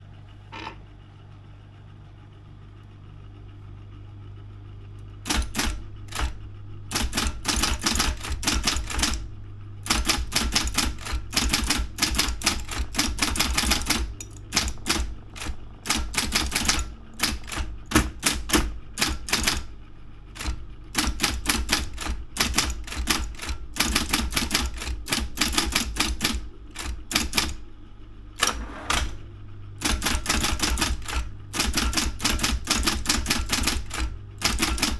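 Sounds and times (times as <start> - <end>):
steady low hum: 0.0 - 34.9
typewriter key strikes: 5.2 - 9.2, 9.8 - 19.7, 20.4 - 27.6, 29.8 - 34.9.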